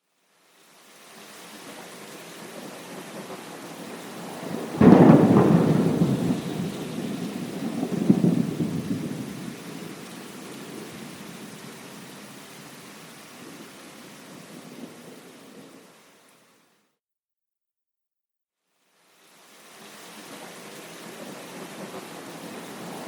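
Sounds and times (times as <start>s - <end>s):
steady rain: 0.0s - 16.9s, 18.6s - 23.0s
thunderclap and rolling rumble: 4.2s - 12.2s.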